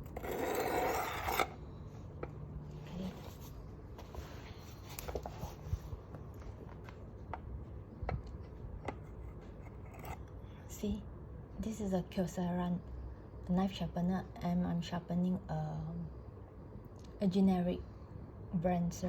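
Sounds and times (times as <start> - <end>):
knife rasping through sharpener: 0.1 - 1.6, 9.6 - 10.2.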